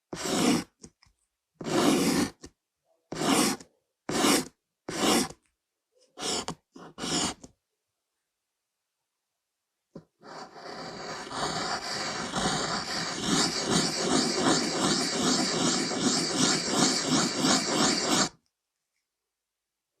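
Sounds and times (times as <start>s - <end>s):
pencil scratching on paper: 0.1s - 0.8s, 1.6s - 2.5s, 3.1s - 5.4s, 6.1s - 7.5s, 10.1s - 18.4s.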